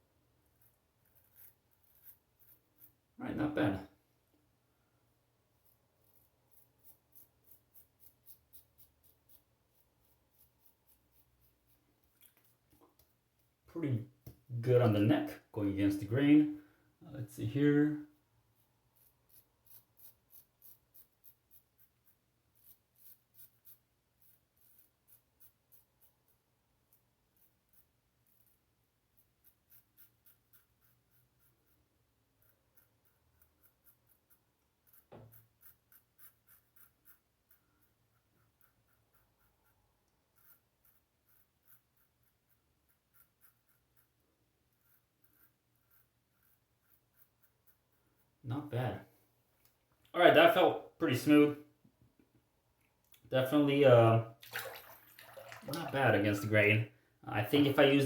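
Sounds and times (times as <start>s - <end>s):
razor scraping stubble: 0.5s - 3.5s, 5.5s - 13.5s, 18.5s - 48.8s.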